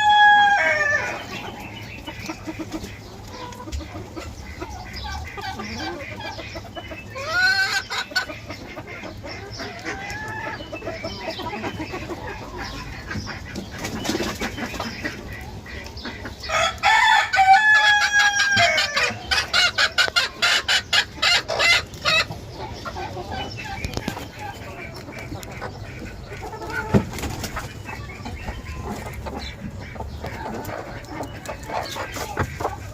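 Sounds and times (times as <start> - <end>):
rooster crowing: 0.0 - 1.2, 16.5 - 19.2
chicken cackles: 0.0 - 32.9
chickens clucking: 0.0 - 32.9.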